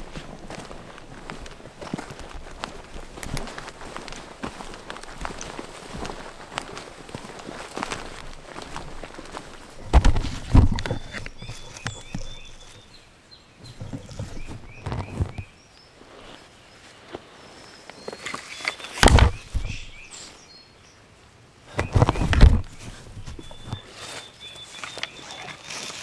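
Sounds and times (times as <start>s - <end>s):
loud rustling and rumbling: 0.0s - 12.9s, 13.6s - 15.5s, 19.0s - 20.1s, 21.8s - 23.9s
songbirds chirping: 0.0s - 26.0s.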